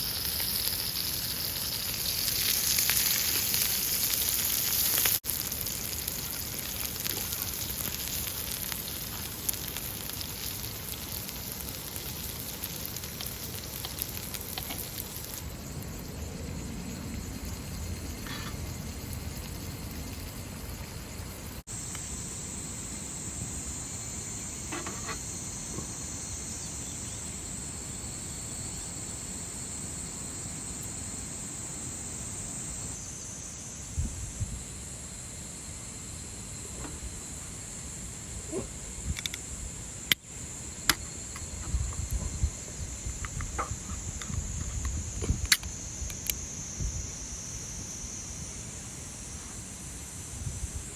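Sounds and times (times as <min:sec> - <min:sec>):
food sizzling in a pan: 0:00.0 - 0:39.1.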